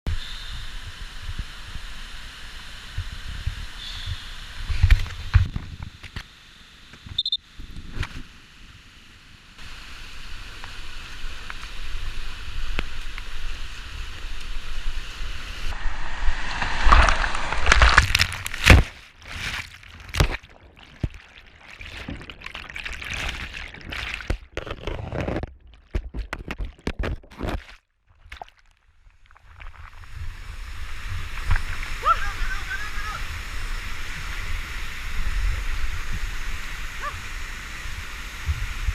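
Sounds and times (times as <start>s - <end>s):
whitewater rushing: 15.5s - 18.8s
kayak splashing and knocking: 17.0s - 28.6s.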